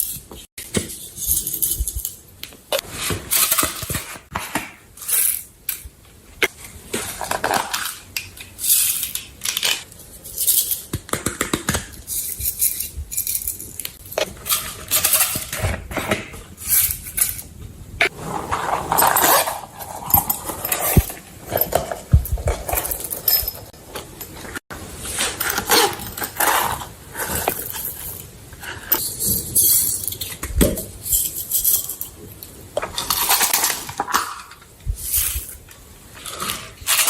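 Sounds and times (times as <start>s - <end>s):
container clinking: 12.1s - 28.3s, 32.8s - 35.6s.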